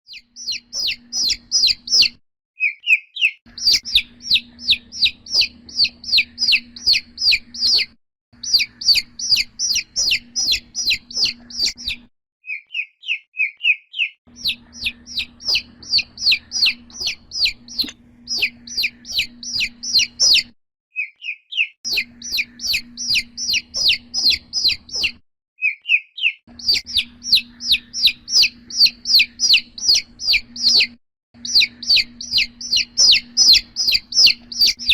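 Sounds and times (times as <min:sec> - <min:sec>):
chick peeping: 0:00.1 - 0:20.5, 0:21.1 - 0:34.9.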